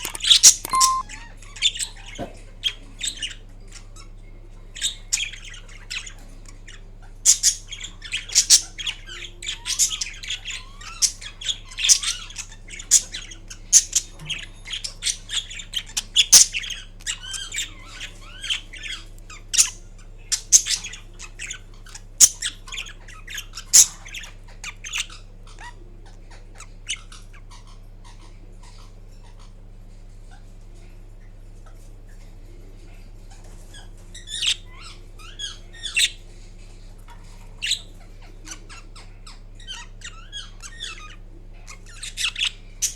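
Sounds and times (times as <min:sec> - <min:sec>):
parakeet chattering: 0:00.0 - 0:01.1, 0:04.8 - 0:29.6, 0:33.7 - 0:36.3, 0:37.1 - 0:42.9.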